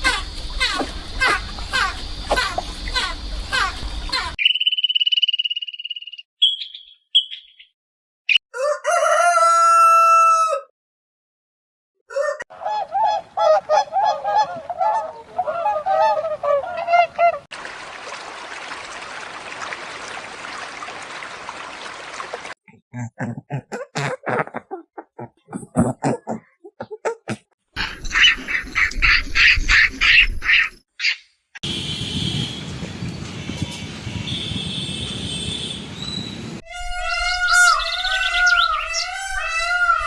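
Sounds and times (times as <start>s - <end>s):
long fowl call: 8.5s - 10.7s, 36.6s - 40.0s
rapid repeated fowl calls: 36.6s - 40.0s.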